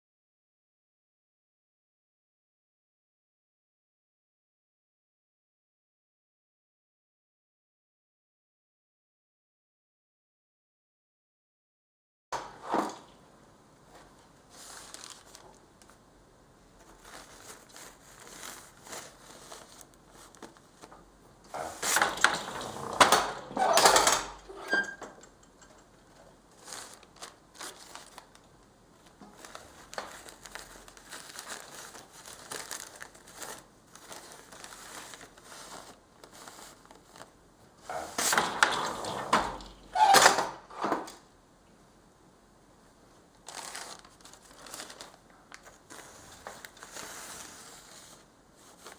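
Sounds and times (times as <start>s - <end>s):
paper crinkling and rustling: 12.4s - 24.6s, 25.7s - 41.2s, 43.3s - 48.9s.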